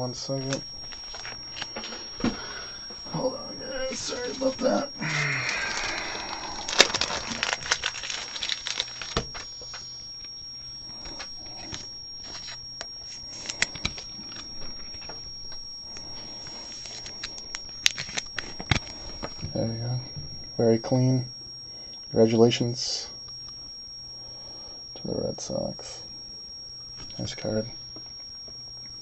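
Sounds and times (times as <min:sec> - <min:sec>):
plastic card sleeves crinkling: 0:00.4 - 0:02.2, 0:05.4 - 0:19.4.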